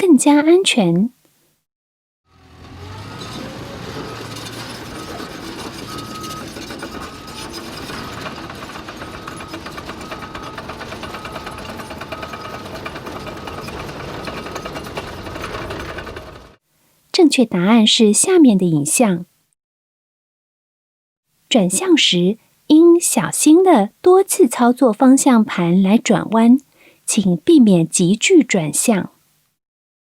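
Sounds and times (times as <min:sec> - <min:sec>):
construction machine engine clatter: 0:02.3 - 0:16.6
back-up alarm beeping: 0:04.8 - 0:15.0.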